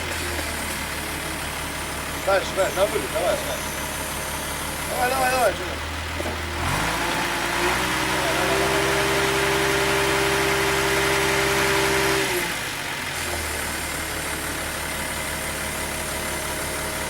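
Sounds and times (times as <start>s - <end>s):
crane engine drone: 0.0s - 17.0s
crane hydraulic whine: 0.1s - 6.3s.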